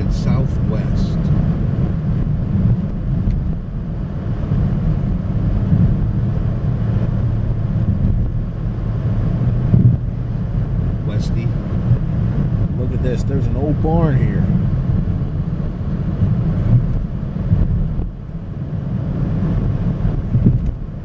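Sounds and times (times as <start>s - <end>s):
car driving heard from cabin: 0.0s - 21.0s
car bump: 9.4s - 10.2s, 20.2s - 20.9s.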